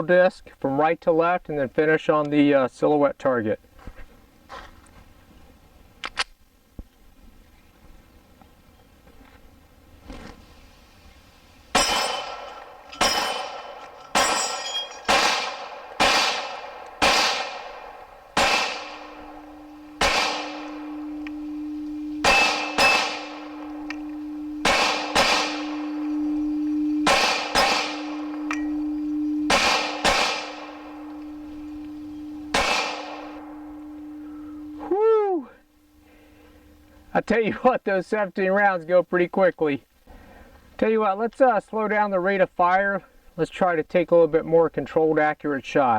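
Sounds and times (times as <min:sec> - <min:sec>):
steel targets clanging: 0:11.7 - 0:34.2
steel gong ringing: 0:11.7 - 0:34.8
pistol shots: 0:11.8 - 0:26.3, 0:27.0 - 0:28.8, 0:29.5 - 0:31.2, 0:32.5 - 0:34.0.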